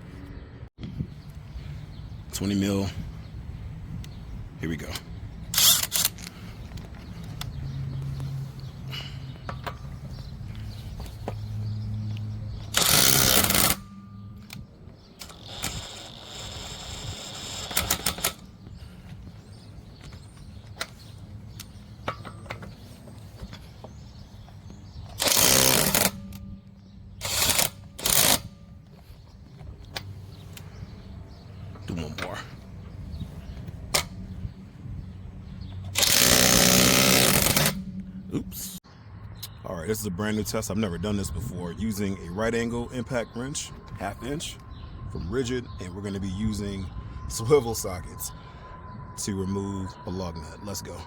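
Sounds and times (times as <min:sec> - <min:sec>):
steady low hum: 0:21.1 - 0:38.8
impact wrench hammering: 0:25.2 - 0:26.4, 0:36.0 - 0:37.8.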